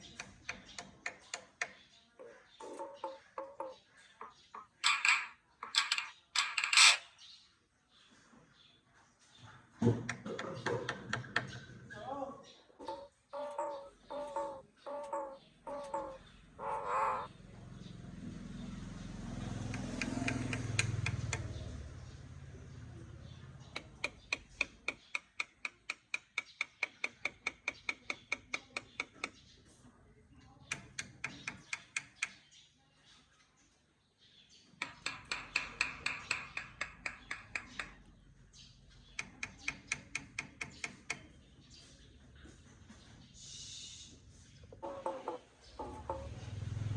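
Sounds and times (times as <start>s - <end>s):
myna calling: 12.3s - 17.3s
sharp clicks: 30.7s - 32.4s, 39.0s - 41.4s.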